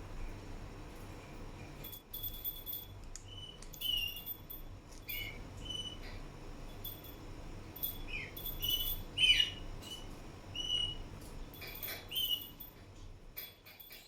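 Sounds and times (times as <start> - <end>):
parrot chirping softly: 2.7 - 6.8, 7.8 - 12.6.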